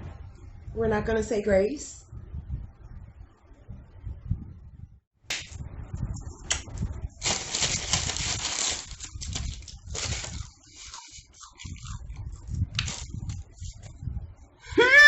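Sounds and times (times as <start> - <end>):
person eating noisily: 7.4 - 14.0.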